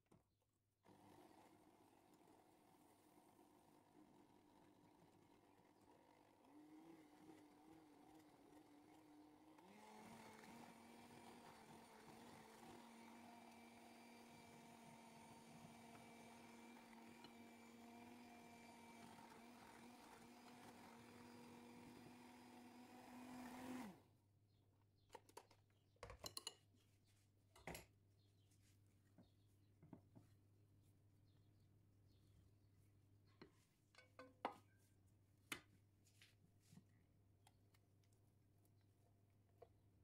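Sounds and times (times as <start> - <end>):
electric mixer motor whine: 0.8 - 24.0.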